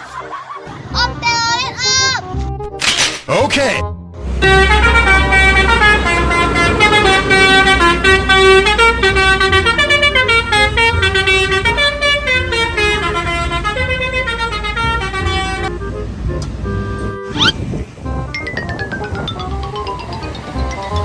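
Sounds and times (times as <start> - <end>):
multi-tone air horn tune: 4.2 - 15.9
low engine rumble: 4.2 - 21.0.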